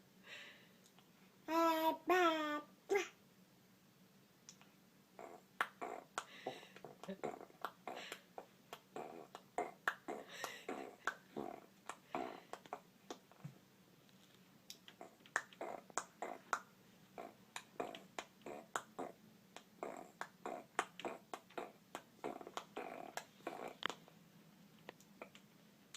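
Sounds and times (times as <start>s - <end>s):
baby making wet mouth clicks: 19.6s - 24.0s.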